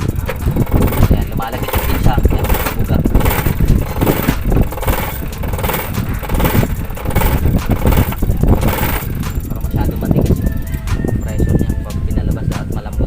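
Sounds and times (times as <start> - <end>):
injector solenoid clicking rapidly: 0.0 - 11.0.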